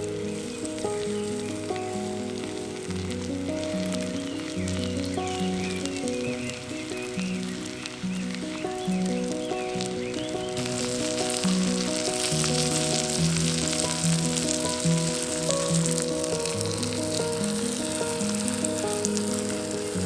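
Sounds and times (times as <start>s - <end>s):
background music: 0.0s - 20.0s
food sizzling in a pan: 0.0s - 20.0s.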